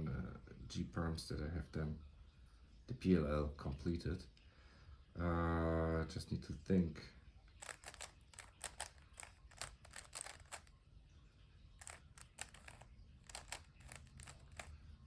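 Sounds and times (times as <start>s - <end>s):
speed cube turning clicks: 7.6s - 10.7s, 11.8s - 14.8s.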